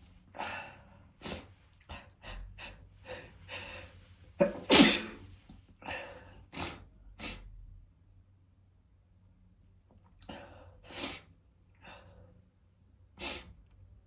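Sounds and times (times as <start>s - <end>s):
man sneezing: 4.4s - 6.0s.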